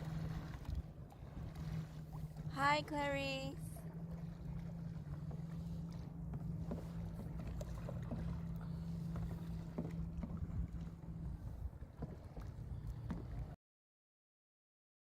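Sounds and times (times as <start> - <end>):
paddle splashing water: 0.0 - 13.6
steady low hum: 0.0 - 13.6
paddle knocks: 4.2 - 11.1, 11.8 - 13.5.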